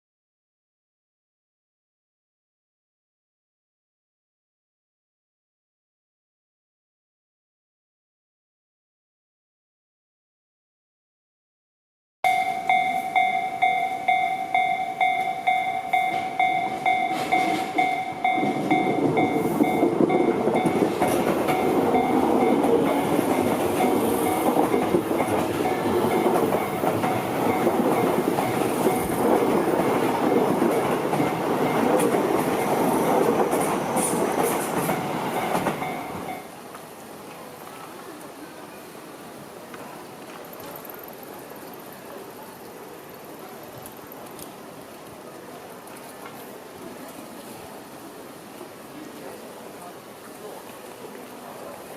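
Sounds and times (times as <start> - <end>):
level crossing bell dinging: 12.3 - 29.2
wheels clacking over rail joints: 12.3 - 38.4
train passing: 12.3 - 51.9.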